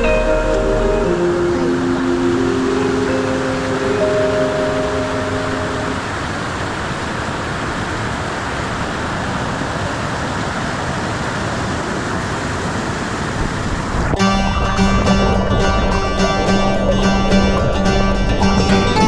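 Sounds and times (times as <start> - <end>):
music: 0.0 - 6.1, 14.2 - 19.0
waterfall rushing: 0.0 - 19.0.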